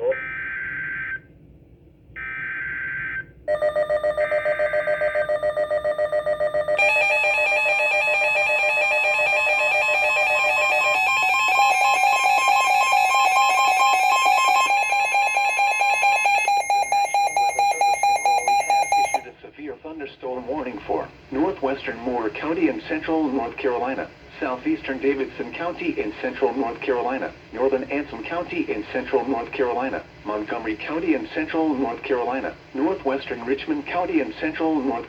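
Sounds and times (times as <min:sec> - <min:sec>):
pulsing electronic alarm tone: 0:02.7 - 0:19.3.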